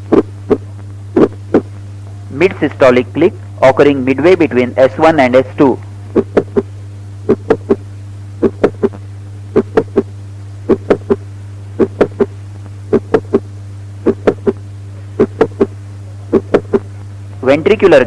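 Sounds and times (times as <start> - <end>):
steady low hum: 0.0 - 18.0
heartbeat with clicks: 0.1 - 1.7, 6.2 - 6.7, 7.3 - 7.8, 8.4 - 9.0, 9.6 - 10.1, 10.7 - 11.2, 11.8 - 14.6, 15.2 - 16.9.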